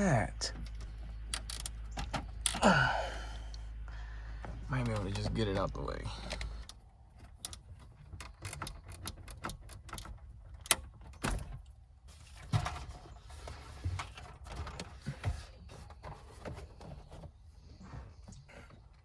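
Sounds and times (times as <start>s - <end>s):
hands rattling plastic parts: 4.8s - 17.3s.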